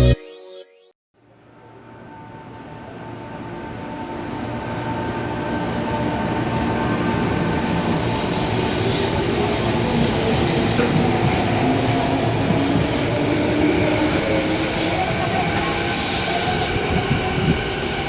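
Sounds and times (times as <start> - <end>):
train wheels on rails: 4.1 - 18.0.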